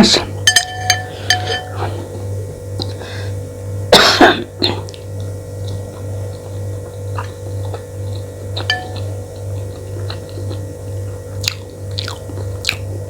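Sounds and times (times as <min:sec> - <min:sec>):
steady low hum: 0:00.0 - 0:13.0
woman clearing her throat: 0:03.9 - 0:04.9
woman coughing: 0:03.9 - 0:04.9.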